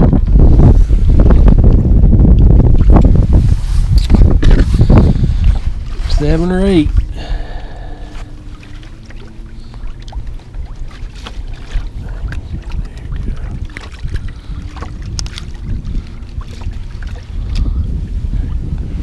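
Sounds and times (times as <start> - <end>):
wind buffeting microphone: 0.0 - 19.0
faint steady hum: 4.8 - 18.9.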